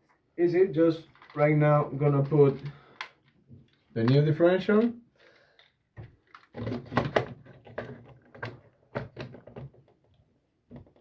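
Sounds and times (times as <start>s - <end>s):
plastic clicks and knocks: 6.0s - 11.0s.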